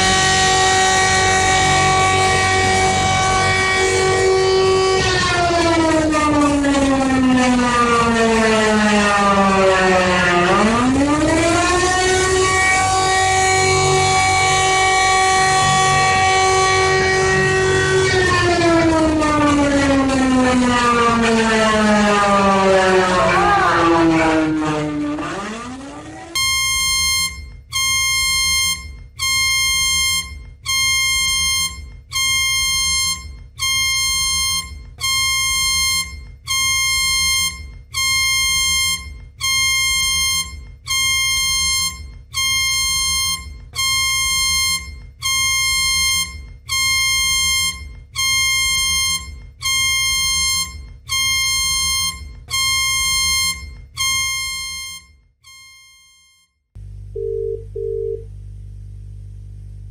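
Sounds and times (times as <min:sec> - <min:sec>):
low hum: 0:00.0 - 0:55.8, 0:56.8 - 0:59.9
high electronic alert beep: 0:26.4 - 0:56.4.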